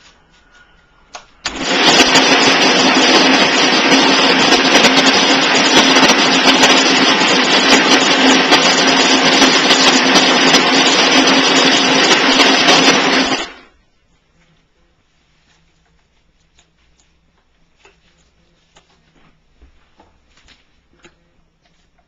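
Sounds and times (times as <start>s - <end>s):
ice machine motor humming: 1.4s - 13.7s.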